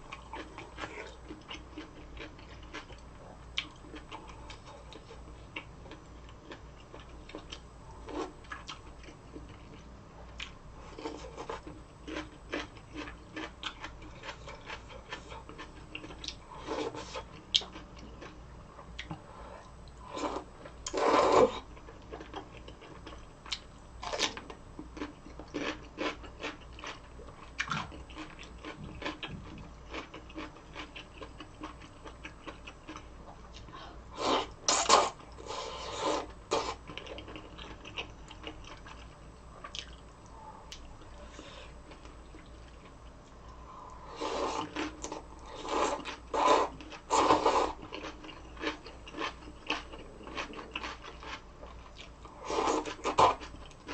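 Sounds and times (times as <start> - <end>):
mouth clicks and chewing crunches: 22.1 - 33.8, 36.5 - 40.9, 47.7 - 53.9.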